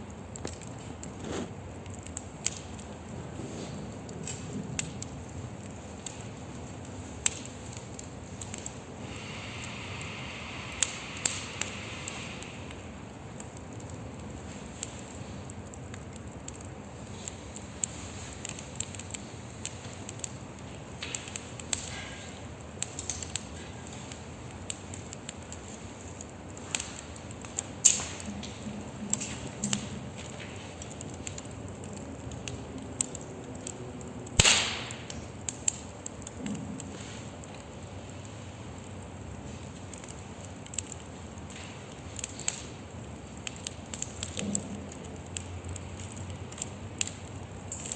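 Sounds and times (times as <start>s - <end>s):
fire crackling with sharp pops: 0.0s - 47.9s.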